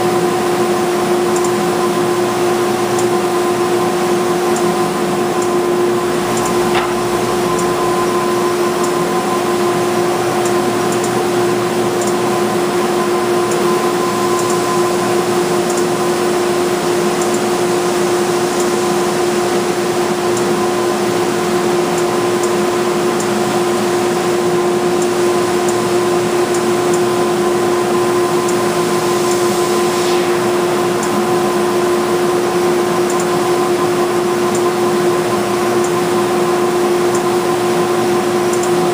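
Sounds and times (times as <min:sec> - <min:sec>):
belt sander running: 0:04.8 - 0:09.6.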